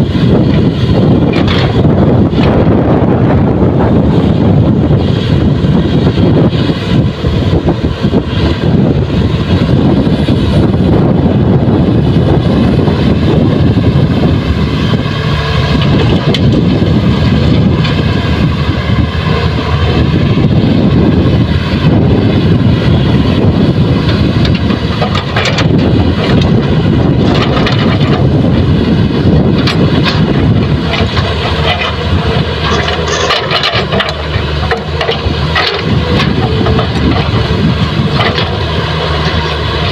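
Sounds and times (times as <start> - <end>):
heavy diesel engines running: 0.0 - 39.9
knocks and clatter: 1.3 - 1.8, 24.1 - 26.6, 27.2 - 28.3, 32.6 - 37.5, 38.1 - 39.9.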